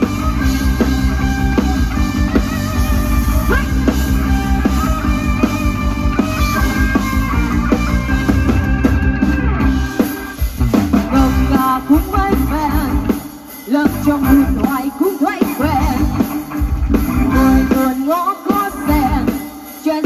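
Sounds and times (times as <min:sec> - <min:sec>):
lead melody: 0:00.0 - 0:14.8
bass: 0:00.0 - 0:19.5
drum kit beat: 0:00.0 - 0:20.0.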